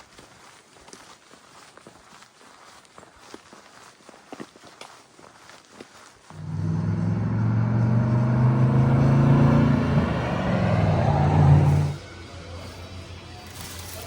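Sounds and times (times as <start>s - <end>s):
motor vehicle engine running: 6.3s - 13.6s.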